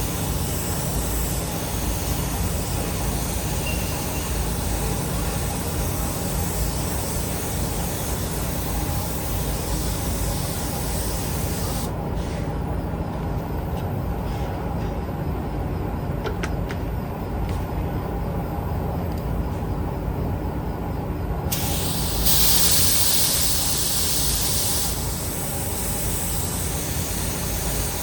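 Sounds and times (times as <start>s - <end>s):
spray gun hissing: 0.0s - 11.9s, 21.5s - 28.0s.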